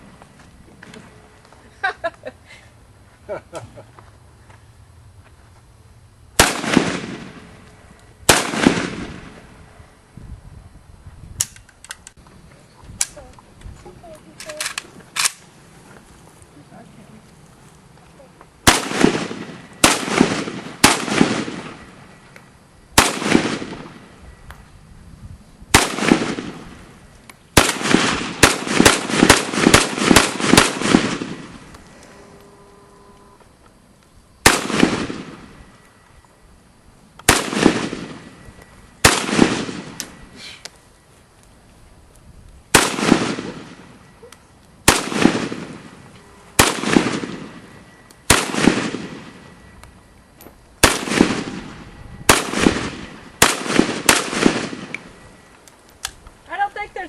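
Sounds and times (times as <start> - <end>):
rifle shots with echo: 6.4 - 7.6, 8.3 - 9.4, 18.6 - 21.9, 23.0 - 24.1, 25.7 - 26.8, 27.6 - 31.6, 34.4 - 35.5, 37.3 - 40.2, 42.7 - 43.9, 44.8 - 46.0, 46.6 - 49.5, 50.8 - 55.2.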